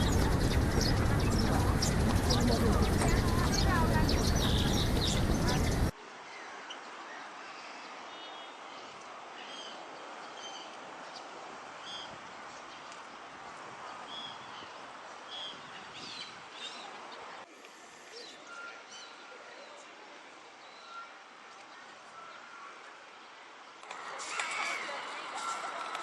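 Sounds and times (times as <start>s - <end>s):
small birds chirping: 0.0s - 13.2s, 13.8s - 17.5s.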